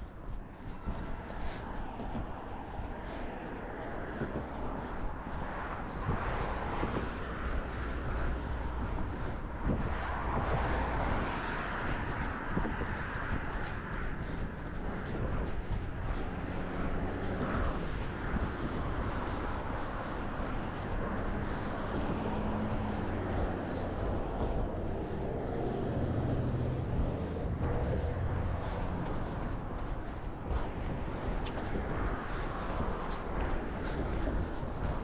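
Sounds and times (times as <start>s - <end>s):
passing traffic engine hum: 0.0s - 35.0s
wind rumble: 0.0s - 35.0s.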